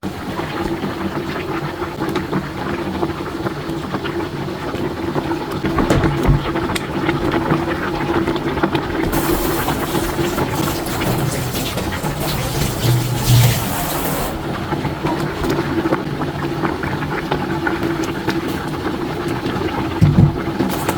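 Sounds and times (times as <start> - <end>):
soup boiling and bubbling: 6.6 - 20.9.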